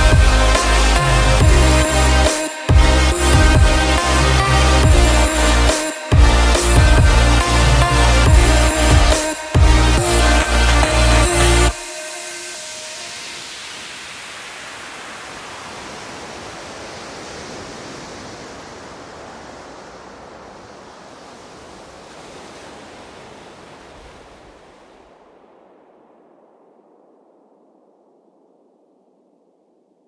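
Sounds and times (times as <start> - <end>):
steady rushing noise: 0.0 - 30.0.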